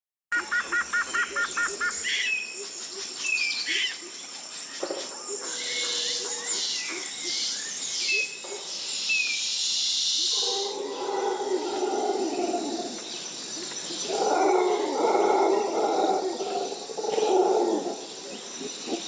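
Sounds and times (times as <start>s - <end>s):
high insect trill: 0.4s - 19.0s.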